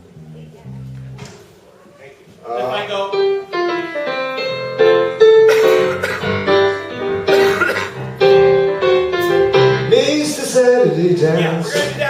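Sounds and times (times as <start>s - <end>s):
piano melody over chords: 2.8s - 12.0s.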